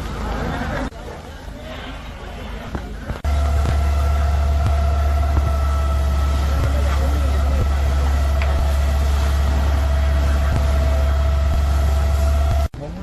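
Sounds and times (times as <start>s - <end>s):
faint voices: 0.0s - 13.0s
steady whine: 2.8s - 12.8s
fire truck engine running: 2.9s - 12.8s.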